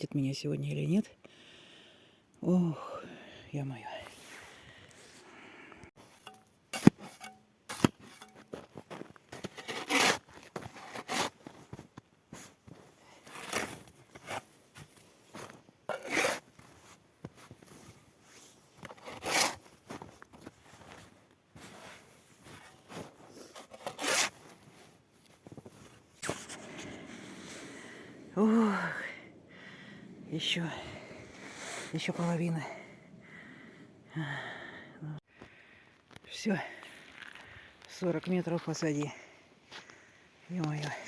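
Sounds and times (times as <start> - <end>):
snow shovel scraping snow: 6.0 - 11.8, 12.4 - 28.1, 30.9 - 32.5.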